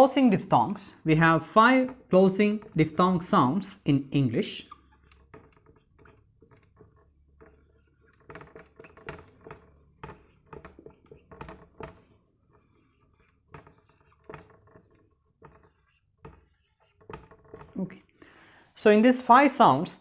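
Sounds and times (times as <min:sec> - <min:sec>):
light taps and knocks: 0:04.7 - 0:18.0.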